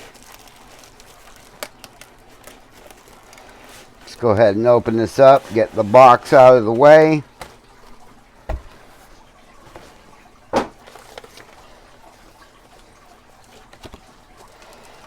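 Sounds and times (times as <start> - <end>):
box thump: 8.5 - 9.0, 10.5 - 10.9.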